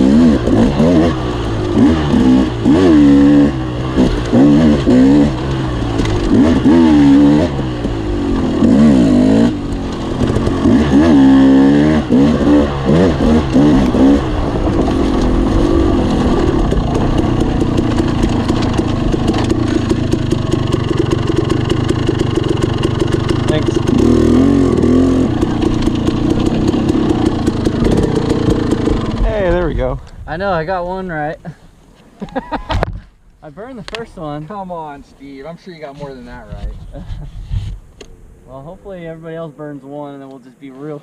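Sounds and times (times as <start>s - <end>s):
dirt bike engine revving: 0.0s - 29.8s.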